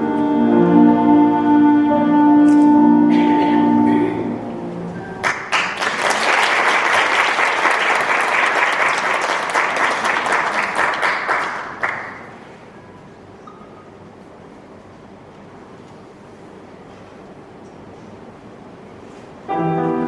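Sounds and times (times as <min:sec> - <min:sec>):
audience applauding: 0:05.2 - 0:12.4.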